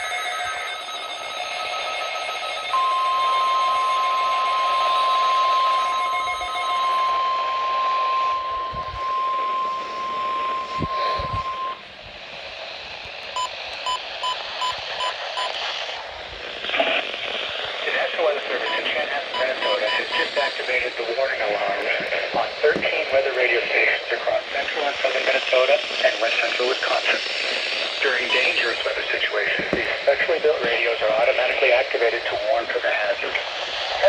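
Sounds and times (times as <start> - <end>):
steady high alarm tone: 0.0 - 11.9, 13.2 - 15.8, 18.5 - 25.4, 27.2 - 30.8
short evenly spaced beeps: 2.8 - 11.8, 13.4 - 15.6, 18.6 - 20.5, 28.3 - 28.6
radio hiss: 3.6 - 34.0.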